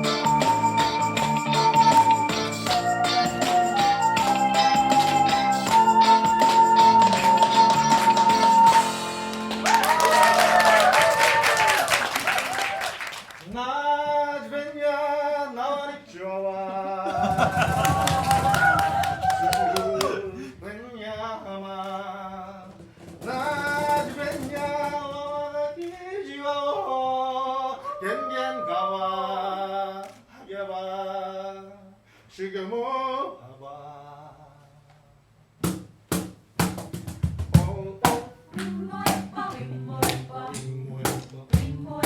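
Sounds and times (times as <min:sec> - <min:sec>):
person singing: 0:23.2 - 0:30.2.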